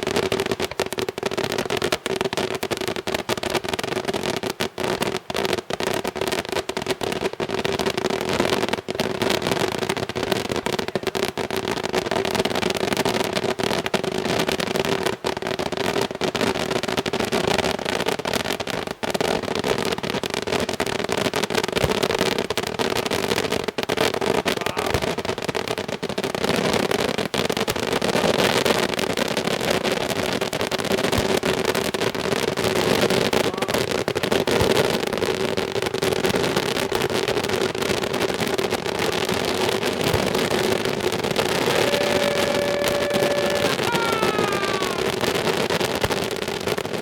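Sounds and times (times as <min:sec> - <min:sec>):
fireworks crackling bangs: 0:00.0 - 0:47.0
firework whistles: 0:40.1 - 0:46.3.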